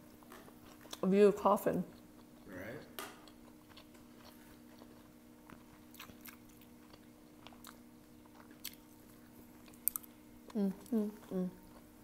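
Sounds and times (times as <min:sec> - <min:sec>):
faint steady hum: 0:00.0 - 0:12.0
chewing noodles: 0:00.1 - 0:01.0, 0:03.2 - 0:10.2.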